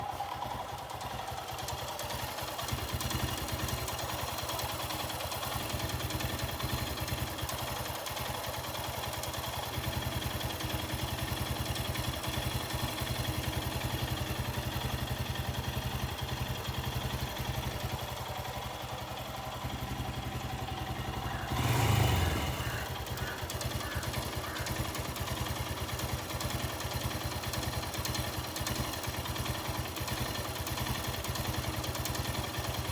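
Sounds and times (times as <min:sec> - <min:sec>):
motorcycle engine idling: 0:00.0 - 0:32.9
rapid engine ticking: 0:00.0 - 0:32.9.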